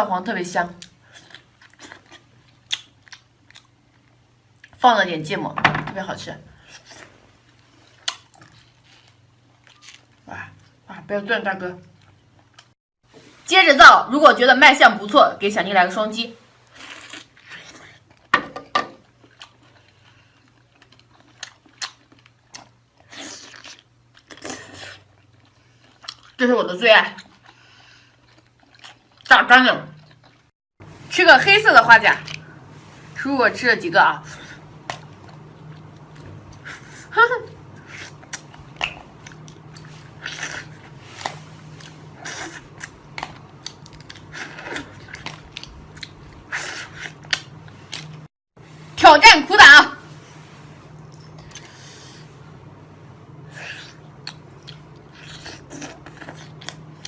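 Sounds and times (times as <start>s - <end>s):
chewing noises: 0.8s - 4.8s, 19.0s - 26.4s, 27.1s - 29.3s, 29.9s - 30.5s, 37.7s - 48.3s, 53.5s - 57.0s.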